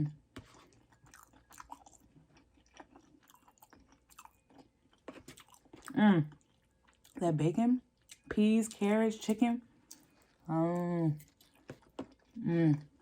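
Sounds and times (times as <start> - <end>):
close-miked chewing: 0.4 - 7.2, 9.8 - 13.0.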